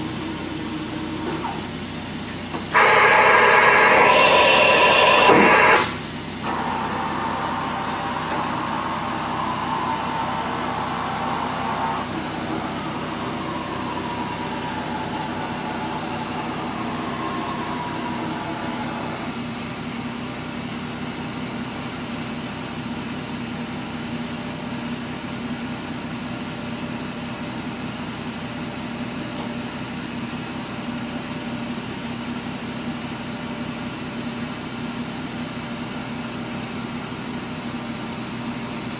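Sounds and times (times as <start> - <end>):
loud machine noise: 0.0 - 22.6
milling machine hum: 0.0 - 23.0
thin high whine: 2.6 - 21.2.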